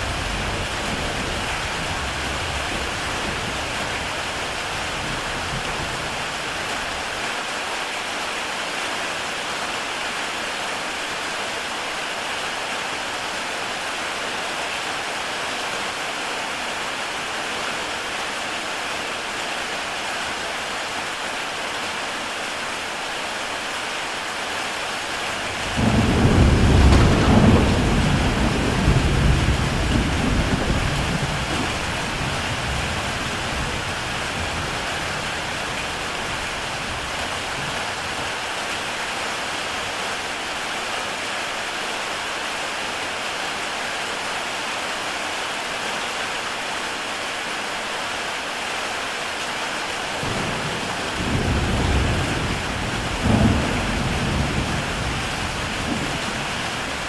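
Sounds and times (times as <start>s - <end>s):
thunderclap rumbling: 0.0s - 7.0s, 25.5s - 38.4s, 50.2s - 57.0s
heavy rain on a tile roof: 0.0s - 57.0s.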